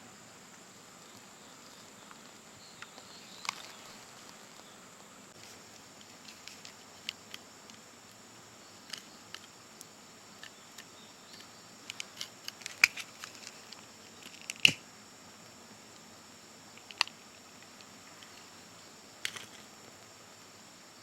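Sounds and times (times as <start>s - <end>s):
fire crackling and popping: 5.5s - 14.8s.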